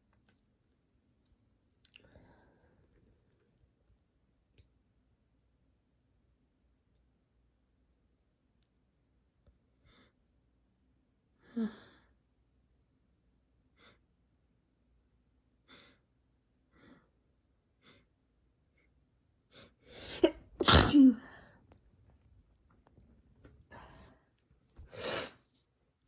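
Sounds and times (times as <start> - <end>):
person sneezing: 20.0 - 21.4
person sniffing and breathing: 24.8 - 25.4.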